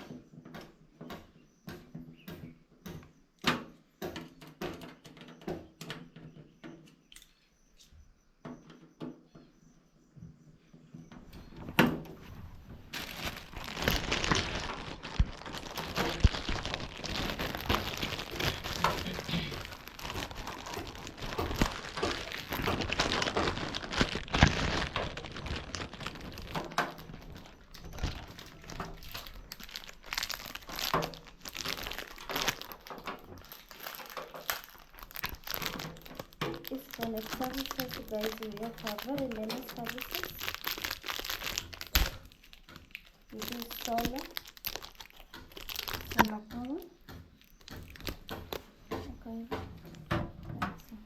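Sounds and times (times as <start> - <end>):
sharp knocks and clicks: 0.0 - 7.0
crinkling and rustling: 10.8 - 51.0.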